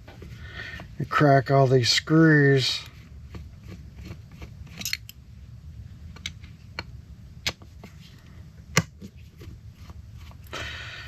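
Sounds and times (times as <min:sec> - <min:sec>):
screwdriver and metal parts clicking: 0:04.7 - 0:05.2.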